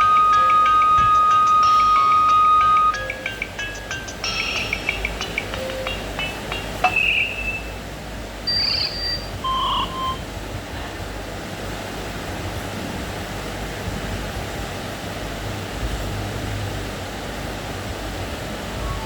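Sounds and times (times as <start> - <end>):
electronic phone beeps: 0.0 - 7.8, 8.5 - 10.2, 18.8 - 19.0
steady hiss with low hum: 0.0 - 19.0.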